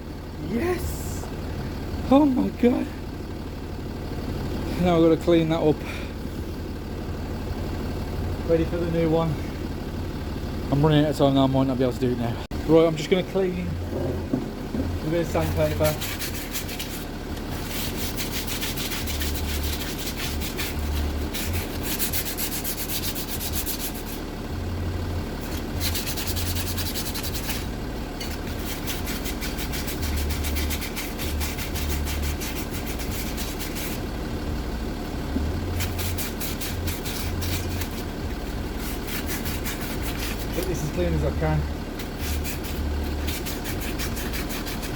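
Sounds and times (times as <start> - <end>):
sandpaper rubbing metal: 15.1 - 24.3, 25.4 - 34.1, 35.6 - 41.2, 42.0 - 44.9.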